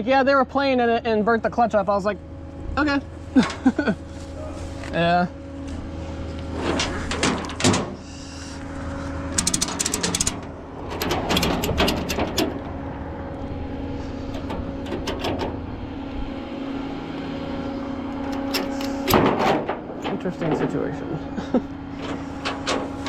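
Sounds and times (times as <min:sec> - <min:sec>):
engine idling: 0:03.4 - 0:23.0
clicking and clatter: 0:09.3 - 0:12.7, 0:14.3 - 0:15.5, 0:18.2 - 0:20.7, 0:22.0 - 0:23.0.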